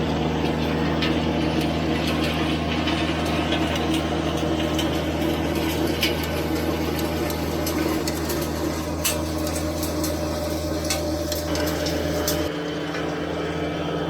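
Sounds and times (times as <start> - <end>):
rotary tiller in soil: 0.0 - 14.0
tractor diesel engine running: 0.0 - 14.0.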